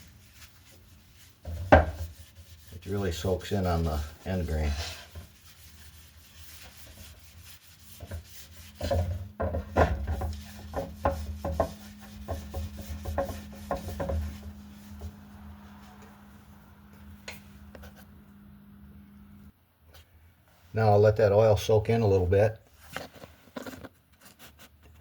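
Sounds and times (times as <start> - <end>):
rubbing strokes on wood: 0.0 - 16.2
steady low hum: 7.5 - 19.6.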